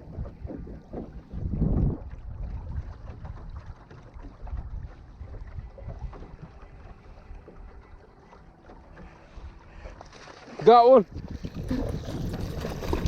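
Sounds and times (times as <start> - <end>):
wind buffeting microphone: 0.0 - 8.0, 11.0 - 13.0
boat engine rumble: 0.0 - 13.0.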